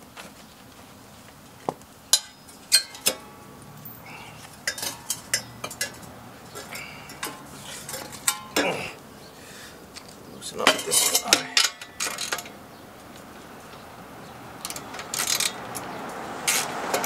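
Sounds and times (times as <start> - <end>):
metal bolts and tools clinking: 2.1 - 9.0, 10.0 - 12.6, 14.6 - 15.9.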